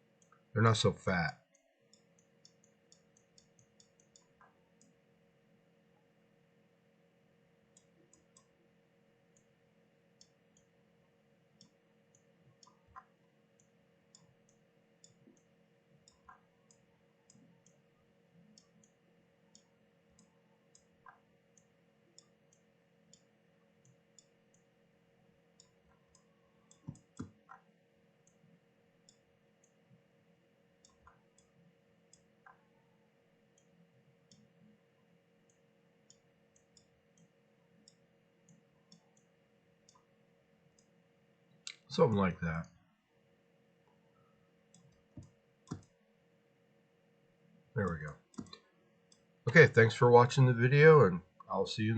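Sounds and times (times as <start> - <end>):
low steady hum: 0.0 - 51.9
computer mouse clicks: 1.6 - 5.0, 7.7 - 8.5, 11.6 - 17.8, 25.6 - 29.8, 30.8 - 32.7, 35.5 - 39.3, 44.7 - 46.0, 48.3 - 49.3.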